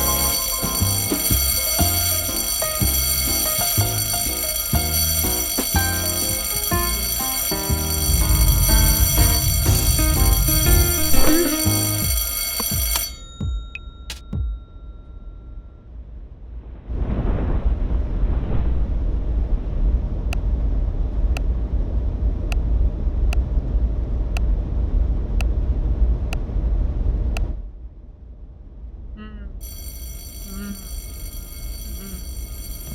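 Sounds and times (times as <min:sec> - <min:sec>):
deep steady rumble: 0:00.0 - 0:12.2, 0:15.9 - 0:29.7
bell-like electronic ringing: 0:00.0 - 0:15.9, 0:29.6 - 0:32.9.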